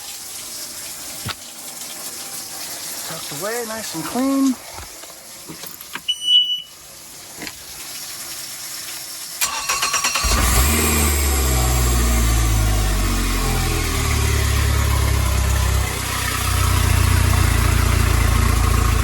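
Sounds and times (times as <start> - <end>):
short high beep: 6.1 - 6.8
outboard motor starting and idling: 9.4 - 19.0.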